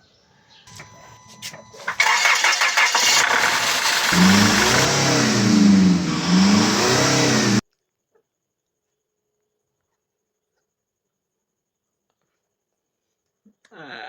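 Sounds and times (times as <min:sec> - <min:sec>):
diesel engine revving: 0:01.8 - 0:07.6.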